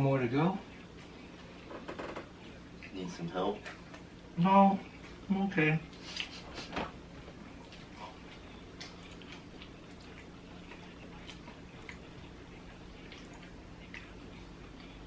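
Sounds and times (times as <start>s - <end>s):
steady low hum: 0.0s - 15.0s
chewing mouth clicks and smacks: 7.6s - 15.0s.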